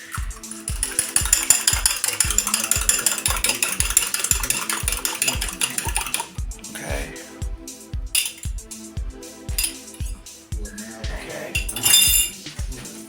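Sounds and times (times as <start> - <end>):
whisking in a bowl: 0.0 - 6.4
background music with steady beat: 0.0 - 13.0.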